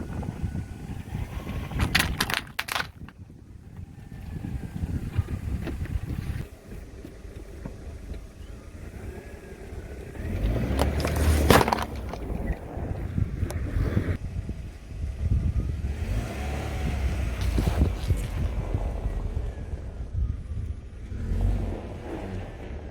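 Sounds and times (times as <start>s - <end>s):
car engine running low: 0.0s - 22.9s
cracking and crunching: 1.6s - 3.2s, 10.2s - 12.8s
tyre rolling over objects: 10.3s - 13.1s.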